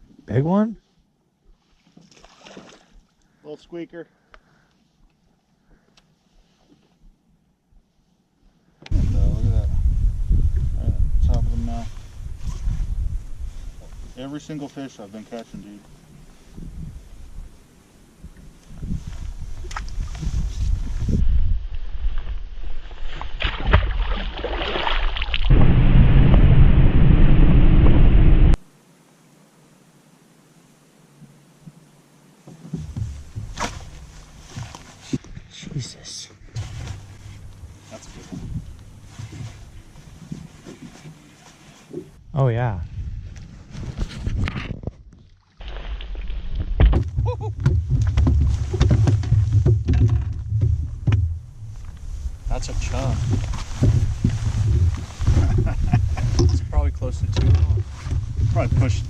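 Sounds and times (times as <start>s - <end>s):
faint hiss: 2.7s - 20.9s, 28.4s - 42.9s
wind buffeting microphone: 8.9s - 14.2s, 18.2s - 22.7s, 47.2s - 59.0s
steady low rumble: 25.4s - 28.6s, 46.4s - 59.0s
knocks and handling noises: 46.8s - 51.4s
knocks and rattles: 46.8s - 51.6s, 53.3s - 59.0s.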